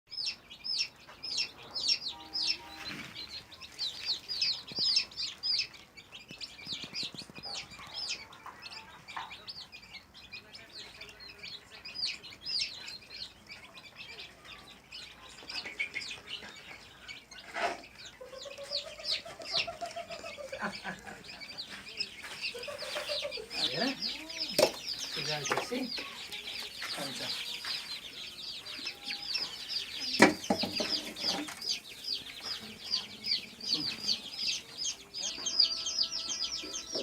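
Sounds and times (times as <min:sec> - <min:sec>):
chickens peeping and chirping: 0:00.1 - 0:37.0.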